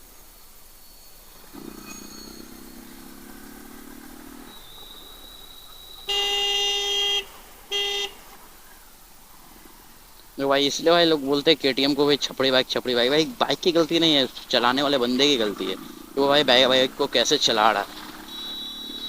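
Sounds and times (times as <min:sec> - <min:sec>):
vehicle horn: 0:06.0 - 0:08.3, 0:18.2 - 0:19.0.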